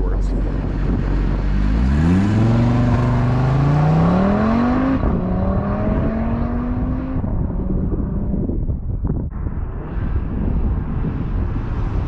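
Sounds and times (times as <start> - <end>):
car engine accelerating hard: 0.3 - 8.6.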